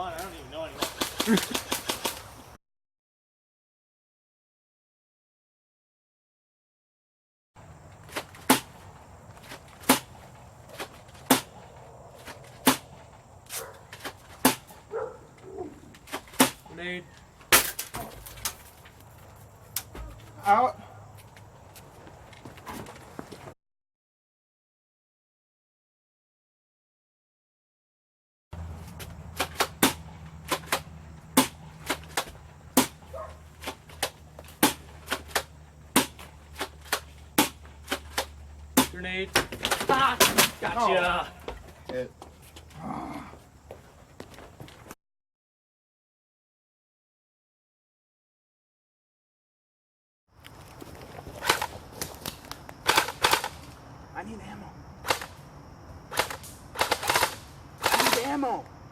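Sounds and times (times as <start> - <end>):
airsoft gun shots: 0.8 - 2.2, 52.8 - 53.6, 56.1 - 58.5.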